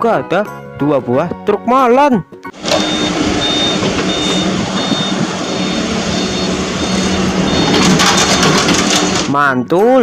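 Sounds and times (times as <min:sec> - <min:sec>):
reversing alarm beeping: 0:02.6 - 0:09.3
truck engine running: 0:02.6 - 0:09.4.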